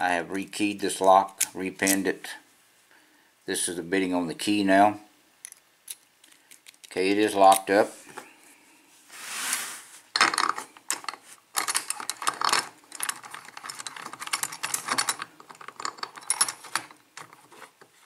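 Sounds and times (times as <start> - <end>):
lock cylinder clicking and rattling: 5.4 - 7.7, 10.2 - 17.5
soft scraping rustle: 7.7 - 11.5, 17.3 - 18.0.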